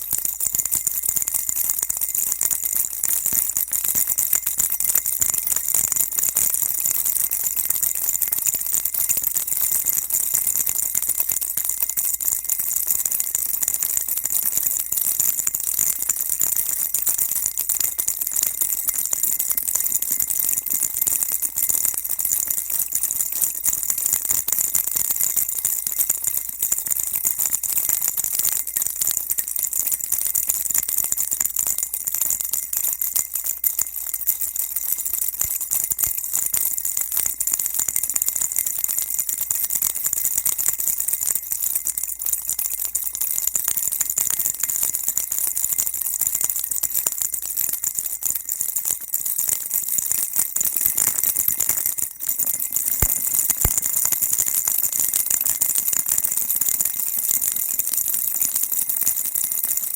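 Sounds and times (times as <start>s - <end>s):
baby rattle shaken: 0.0s - 13.8s, 50.0s - 54.6s.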